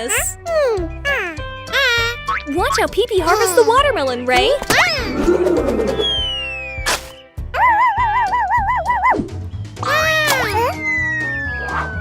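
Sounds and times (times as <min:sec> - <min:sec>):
background music: 0:00.0 - 0:12.0
sharp swish: 0:06.9 - 0:07.2.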